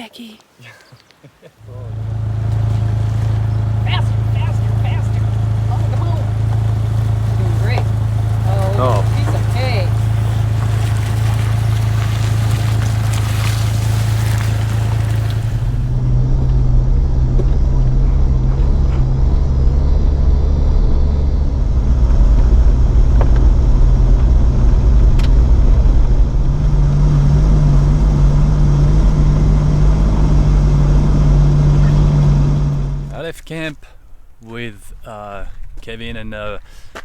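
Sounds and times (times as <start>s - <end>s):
car engine droning: 1.6s - 37.0s.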